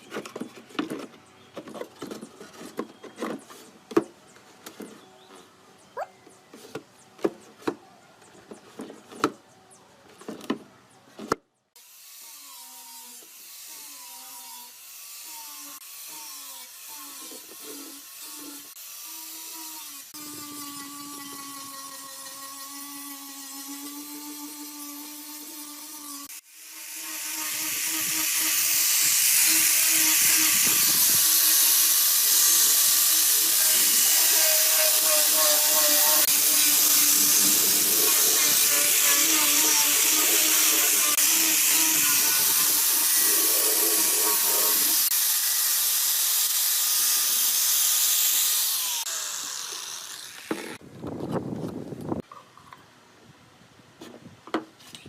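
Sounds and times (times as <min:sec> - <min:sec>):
loud steady hiss: 0:26.4 - 0:49.4.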